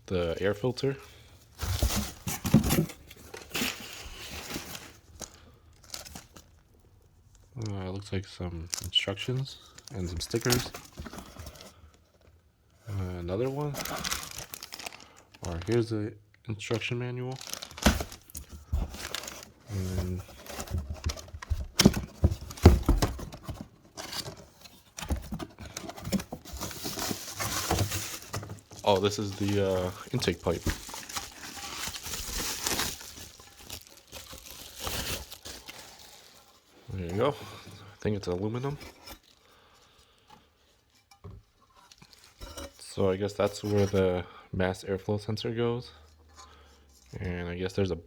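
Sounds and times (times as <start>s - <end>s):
packaging rustling: 0.7s - 6.6s, 8.7s - 11.9s, 13.3s - 15.9s, 17.3s - 37.7s
packaging crinkling and tearing: 1.6s - 6.6s, 8.7s - 11.7s, 13.3s - 15.9s, 17.3s - 36.7s.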